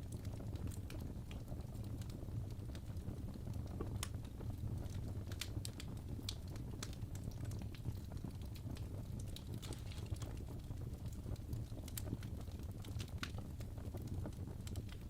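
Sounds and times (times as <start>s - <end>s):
wood fire crackling: 0.0s - 15.0s
sharp pops and snaps: 3.8s - 10.5s.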